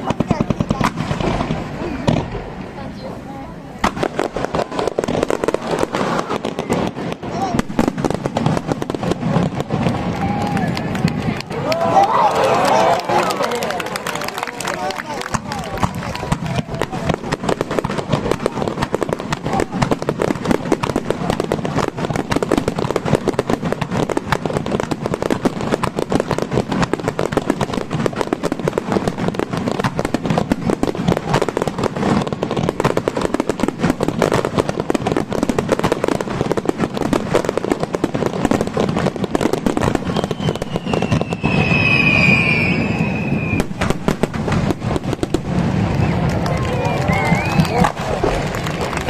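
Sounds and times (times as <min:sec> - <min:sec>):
fireworks bursts and crackling: 0:00.0 - 0:49.0
high whistling tone: 0:40.0 - 0:43.7.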